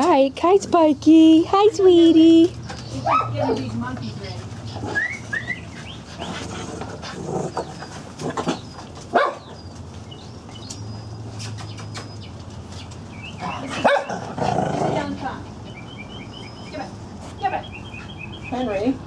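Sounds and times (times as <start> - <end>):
small dogs barking: 2.9 - 3.9, 4.8 - 9.8, 13.3 - 15.2.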